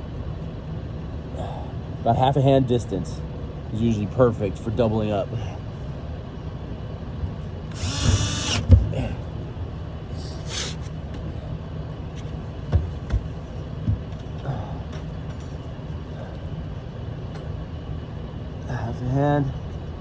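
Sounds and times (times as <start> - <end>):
steady low hum: 0.0 - 20.0
power drill bursts: 7.7 - 8.7.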